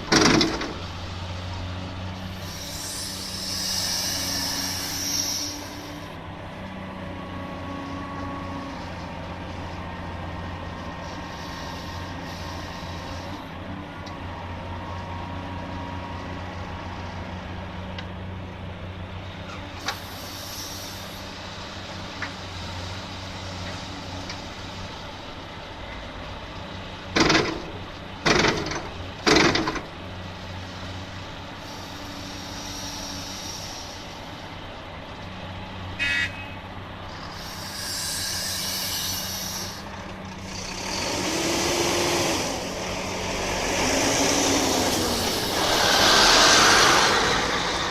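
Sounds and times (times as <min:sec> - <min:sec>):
excavator diesel engine running: 0:00.0 - 0:47.9
long hisses: 0:02.2 - 0:06.2, 0:11.0 - 0:13.5, 0:19.8 - 0:21.4, 0:31.6 - 0:34.6, 0:37.1 - 0:40.0, 0:41.2 - 0:47.9
loud short horn blasts: 0:36.0 - 0:36.6.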